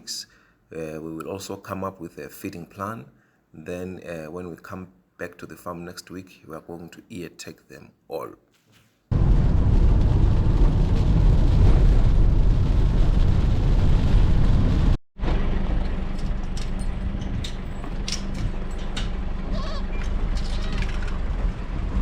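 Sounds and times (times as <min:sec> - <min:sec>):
heavy steady rumble: 0:09.1 - 0:22.0
goats bleating: 0:19.5 - 0:20.0.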